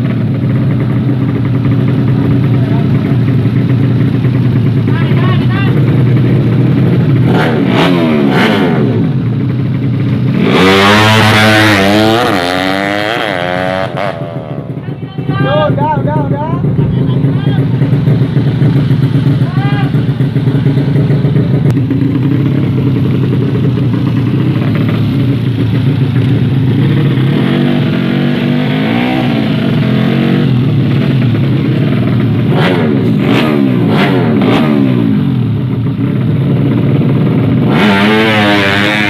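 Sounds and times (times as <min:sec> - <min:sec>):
motorcycle engines revving: 0:00.0 - 0:39.0.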